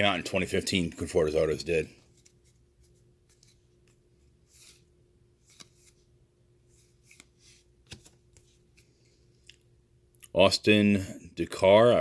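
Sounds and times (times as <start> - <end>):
low steady hum: 0.0 - 12.0
trading cards rustling and clicking: 0.3 - 9.6.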